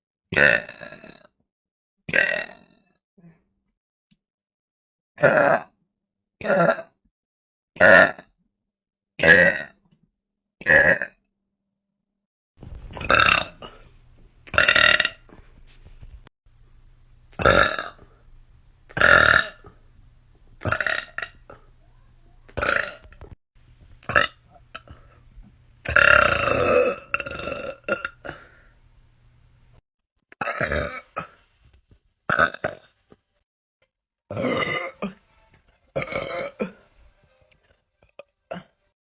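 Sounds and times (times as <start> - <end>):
person burping loudly: 0.3 - 1.4, 2.1 - 3.0, 5.2 - 5.8, 6.4 - 7.0, 7.8 - 8.4, 9.2 - 9.8, 10.6 - 11.2, 12.9 - 15.4, 17.3 - 18.2, 18.9 - 19.8, 20.6 - 21.7, 22.6 - 23.4, 24.0 - 25.0, 25.8 - 28.6, 30.3 - 31.4, 32.3 - 33.0, 34.3 - 35.2, 35.9 - 36.9, 38.2 - 38.9.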